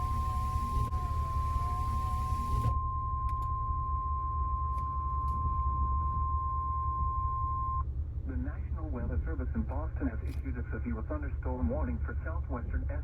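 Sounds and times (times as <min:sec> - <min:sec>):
steady single-pitch alert tone: 0:00.0 - 0:07.8
low hum: 0:00.0 - 0:13.0.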